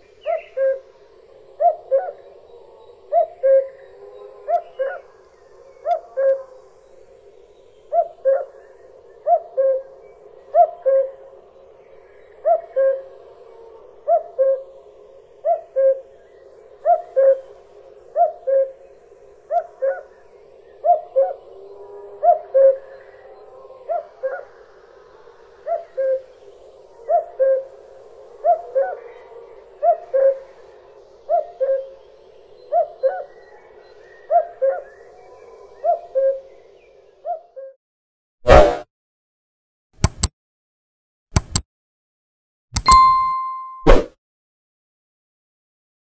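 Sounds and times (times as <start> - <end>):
cuckoo calling: 0.0 - 37.7.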